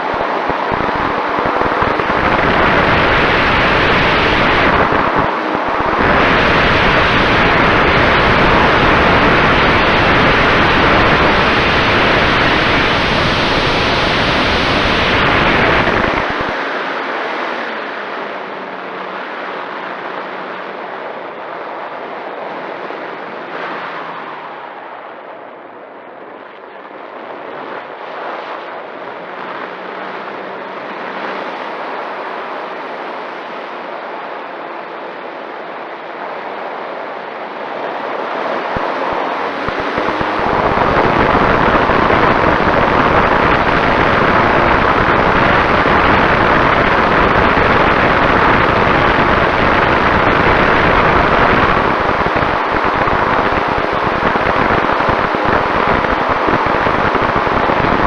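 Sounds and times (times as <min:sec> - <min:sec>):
wind buffeting microphone: 0:00.0 - 0:16.5, 0:38.6 - 0:58.0
steady rushing noise: 0:00.0 - 0:58.0.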